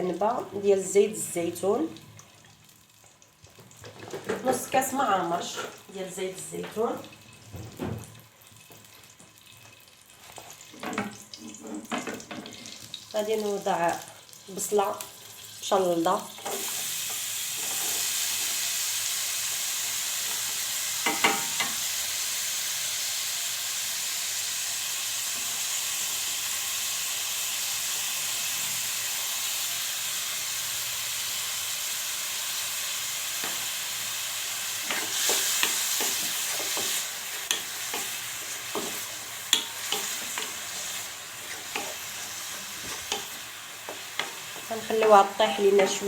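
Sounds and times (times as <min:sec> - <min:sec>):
onion sizzling in a pan: 0:00.0 - 0:46.0
utensil tapping and scraping: 0:34.8 - 0:45.2.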